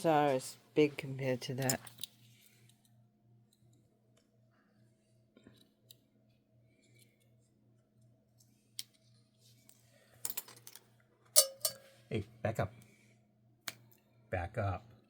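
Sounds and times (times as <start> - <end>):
low steady hum: 0.0 - 13.2.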